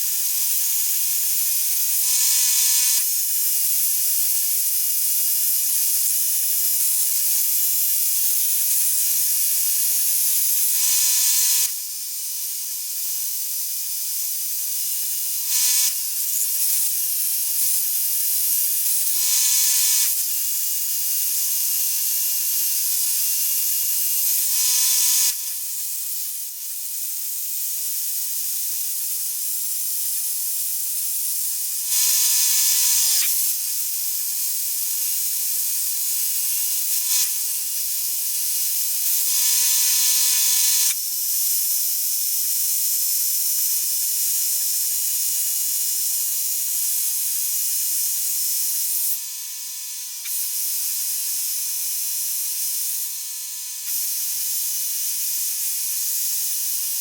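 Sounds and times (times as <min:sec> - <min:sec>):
power tool whining on concrete: 0:14.6 - 0:25.4.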